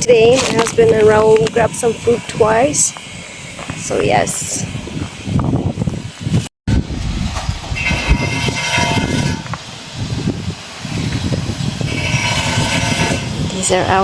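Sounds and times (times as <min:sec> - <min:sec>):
wind buffeting microphone: 0:00.0 - 0:14.0
high buzzing: 0:06.7 - 0:13.3.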